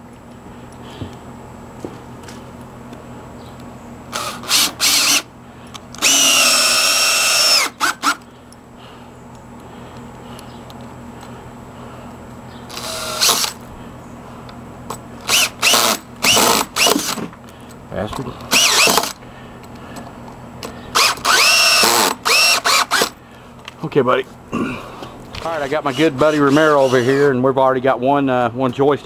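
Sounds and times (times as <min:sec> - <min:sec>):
power drill driving screws: 0:04.1 - 0:05.3, 0:06.0 - 0:08.2, 0:12.7 - 0:13.6, 0:15.2 - 0:17.3, 0:18.5 - 0:19.2, 0:20.9 - 0:23.2, 0:25.7 - 0:27.3.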